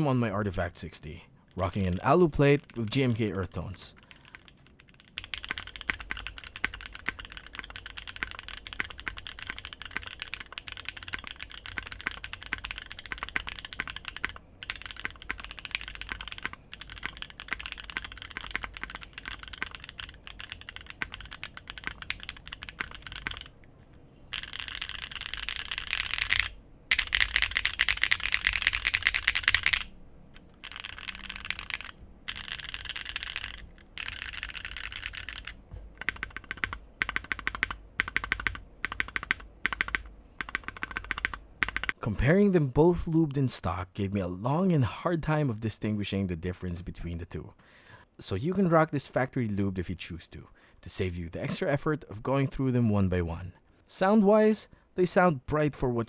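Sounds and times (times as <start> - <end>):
mechanical keyboard typing: 1.6 - 23.6, 24.3 - 42.0.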